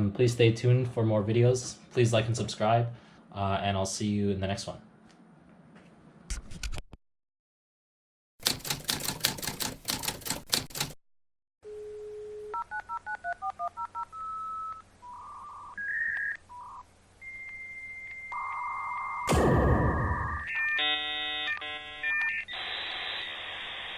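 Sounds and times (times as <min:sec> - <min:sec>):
touch-tone dialing beeps: 0:12.5 - 0:16.8
steady tone: 0:19.3 - 0:20.5.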